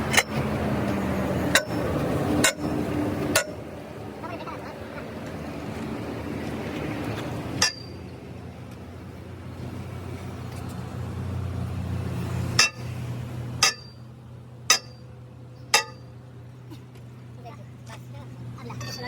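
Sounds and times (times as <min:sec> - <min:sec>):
hammer blows on metal: 0:13.6 - 0:14.0.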